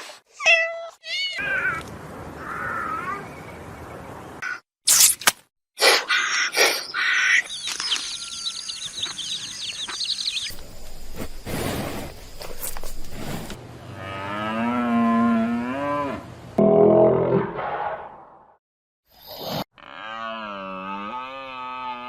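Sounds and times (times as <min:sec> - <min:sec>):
high repeated chirping: 0:06.8 - 0:10.8.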